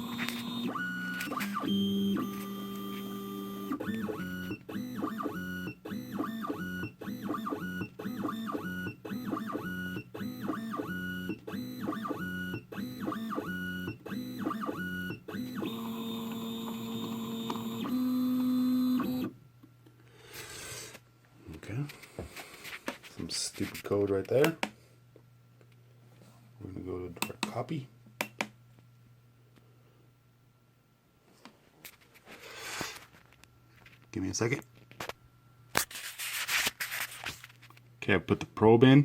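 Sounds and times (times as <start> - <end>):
stepper motors whining: 0.0 - 19.3.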